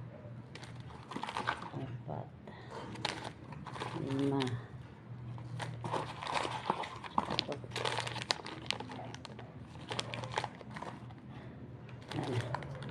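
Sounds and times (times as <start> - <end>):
plastic packaging crinkling: 0.5 - 1.9, 2.8 - 4.6, 5.4 - 11.3, 12.0 - 12.9.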